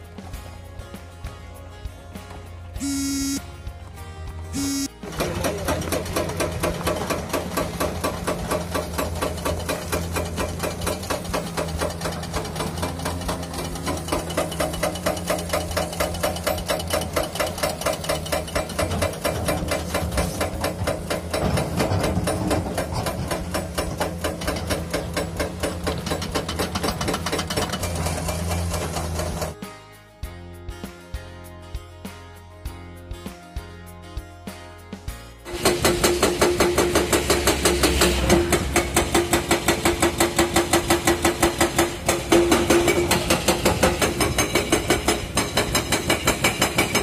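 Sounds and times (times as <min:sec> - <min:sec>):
hydraulic breaker hammering rock: 0:05.0 - 0:29.6, 0:35.5 - 0:47.0.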